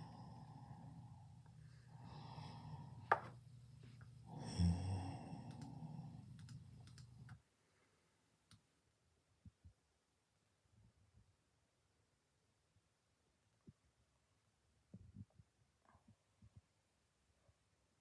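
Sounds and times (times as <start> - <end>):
person snoring: 0.0 - 3.2, 4.2 - 6.5.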